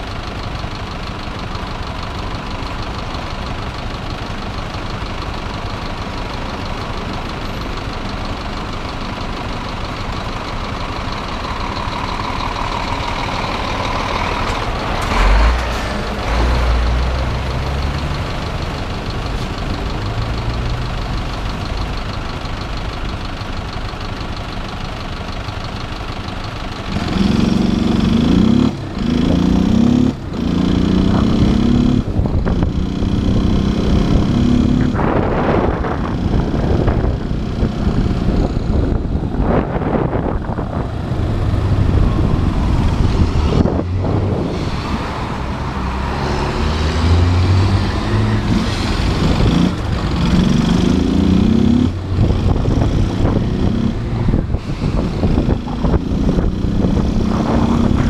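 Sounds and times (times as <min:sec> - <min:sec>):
motorcycle engine idling: 0:00.0 - 0:14.8, 0:17.9 - 0:26.9
motorcycle accelerating: 0:26.9 - 0:58.0
loud low rumble: 0:28.8 - 0:46.0, 0:47.7 - 0:58.0.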